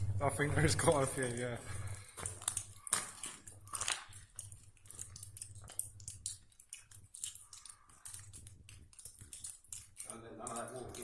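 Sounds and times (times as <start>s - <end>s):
footsteps crunching on gravel: 0.4s - 4.3s
sharp clicks and scuffs: 0.9s - 11.0s.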